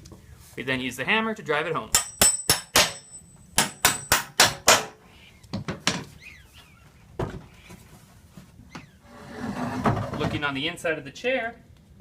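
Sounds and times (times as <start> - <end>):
hammer striking metal bolt: 1.9 - 5.0.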